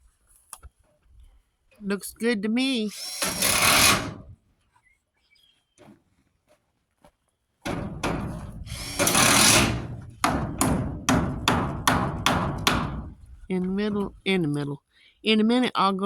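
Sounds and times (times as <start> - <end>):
power tool noise: 2.9 - 4.3, 7.9 - 10.0
rapid hammer blows: 7.7 - 13.1.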